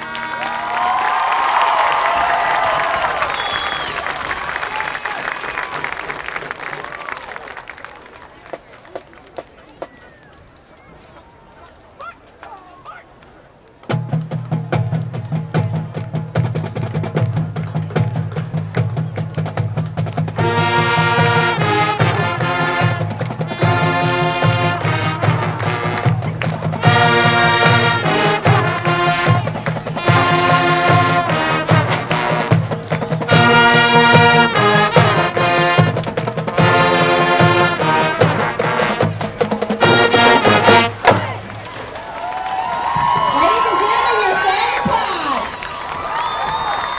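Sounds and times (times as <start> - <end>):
drum line fast beat: 13.9 - 41.6
brass sustained chords: 20.4 - 41.1.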